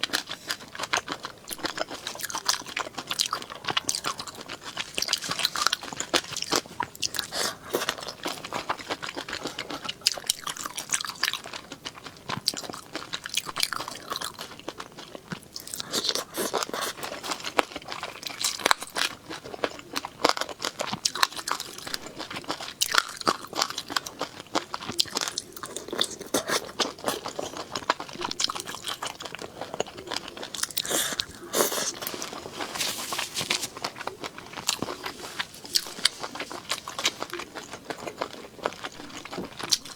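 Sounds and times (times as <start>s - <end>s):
crunchy chewing: 0.0s - 39.9s.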